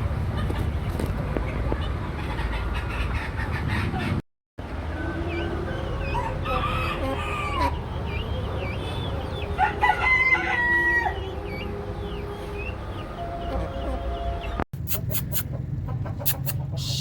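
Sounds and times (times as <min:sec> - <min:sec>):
chickens clucking and chirping: 0:00.2 - 0:17.0
rooster crowing: 0:06.1 - 0:07.8, 0:09.6 - 0:11.3.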